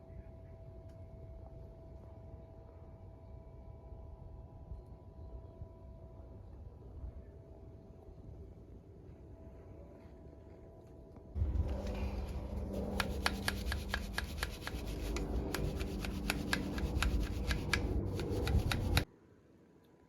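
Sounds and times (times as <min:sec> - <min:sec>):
brush scrubbing plastic: 0:11.6 - 0:19.0.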